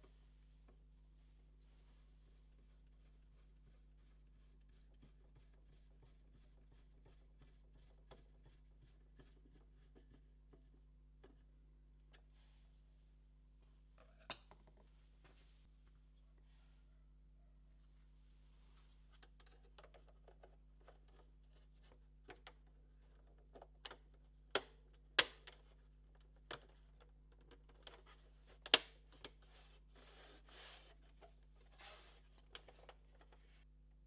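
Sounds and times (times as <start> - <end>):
faint steady hum: 0.0 - 34.0
clicks and taps of plastic parts: 19.2 - 21.3, 23.4 - 29.4.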